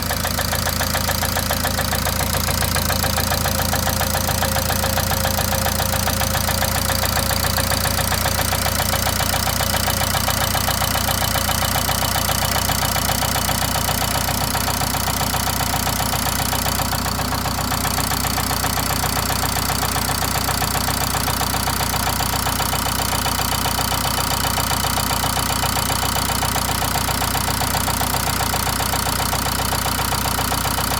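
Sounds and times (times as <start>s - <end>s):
diesel engine knocking: 0.0s - 30.9s.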